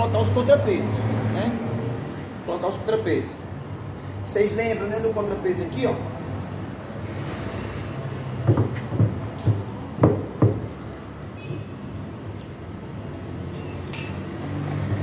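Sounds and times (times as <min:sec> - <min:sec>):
metal parts knocking and clinking: 0:08.6 - 0:11.4, 0:12.1 - 0:12.7, 0:13.5 - 0:14.8.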